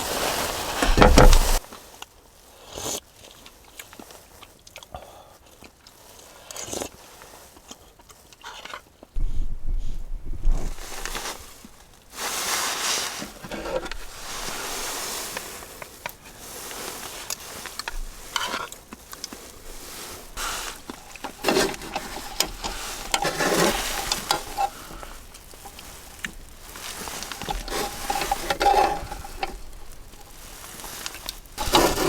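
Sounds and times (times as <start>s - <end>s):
stirring and scraping pan: 0.0s - 1.6s, 9.2s - 32.0s.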